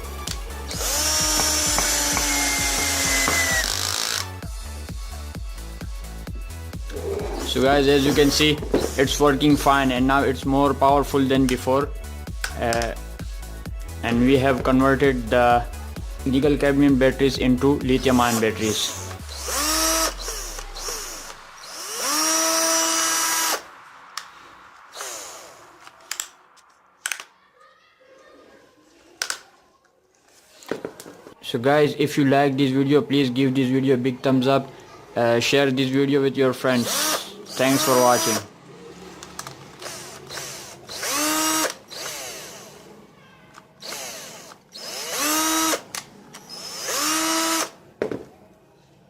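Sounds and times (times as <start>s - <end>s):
cordless drill motor whine: 0.7s - 4.4s, 18.3s - 23.6s, 24.9s - 25.6s, 36.8s - 38.5s, 39.8s - 42.8s, 43.8s - 45.8s, 46.4s - 47.7s.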